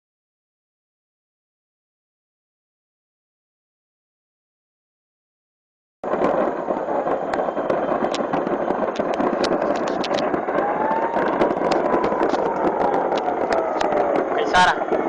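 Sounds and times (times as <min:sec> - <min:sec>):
fireworks crackling and banging: 0:06.0 - 0:15.0.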